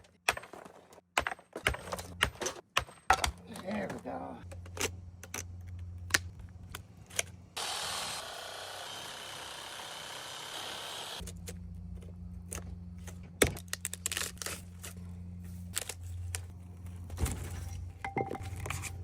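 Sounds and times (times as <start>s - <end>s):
low steady hum: 11.2s - 19.0s.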